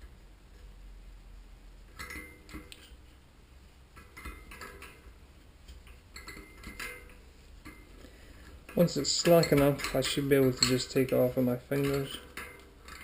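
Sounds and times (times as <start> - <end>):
spanner clinking on metal hub: 8.7 - 11.0.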